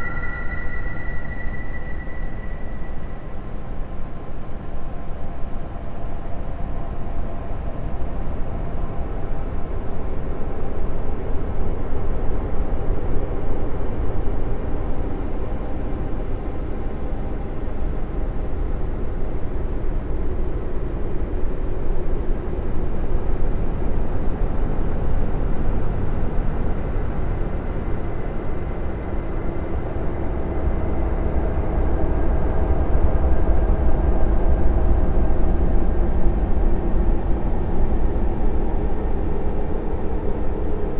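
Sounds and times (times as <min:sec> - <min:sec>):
faint held tones: 0:00.0 - 0:03.6.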